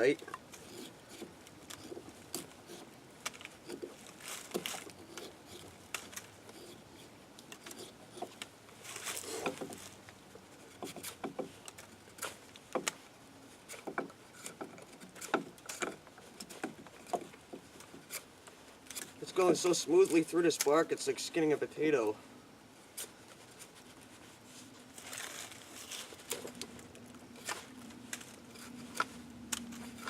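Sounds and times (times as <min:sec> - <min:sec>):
knife shaving bark off stick: 0:00.0 - 0:09.9.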